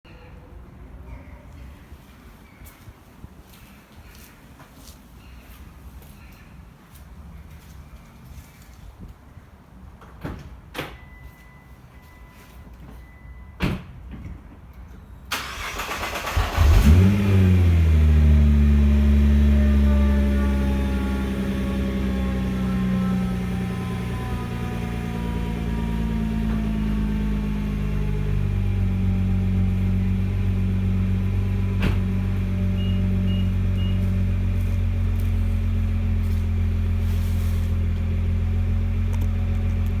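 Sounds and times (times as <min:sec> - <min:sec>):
engine cranking and revving: 0:15.3 - 0:35.3
car engine idling: 0:15.4 - 0:40.0.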